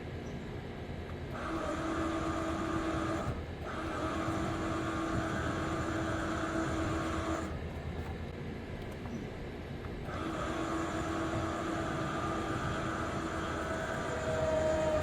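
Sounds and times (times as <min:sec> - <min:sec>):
electric jack motor whining: 0:01.3 - 0:07.7, 0:10.0 - 0:15.0.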